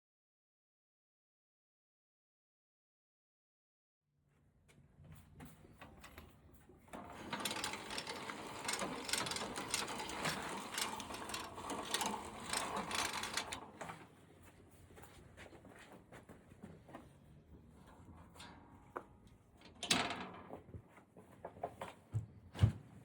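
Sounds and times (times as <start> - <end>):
small machine clattering: 5.8 - 14.6, 18.0 - 20.6.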